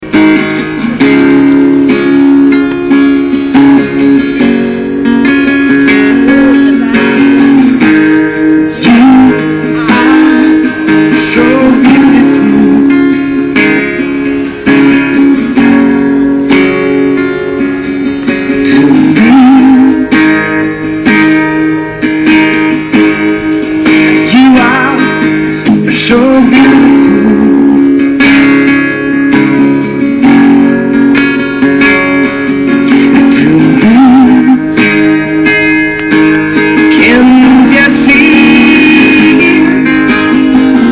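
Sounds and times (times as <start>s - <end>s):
acoustic guitar strumming: 0.0s - 40.9s
man singing: 5.6s - 13.5s, 18.4s - 20.6s, 24.0s - 28.0s, 32.7s - 35.0s, 36.5s - 40.9s.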